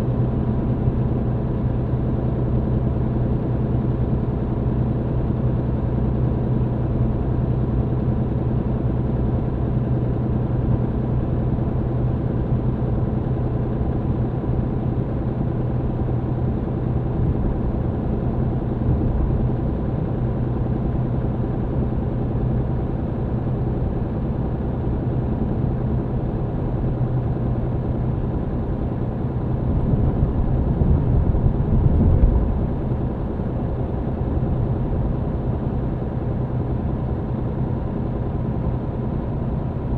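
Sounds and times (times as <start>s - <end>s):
rough low rumble: 29.6s - 33.5s.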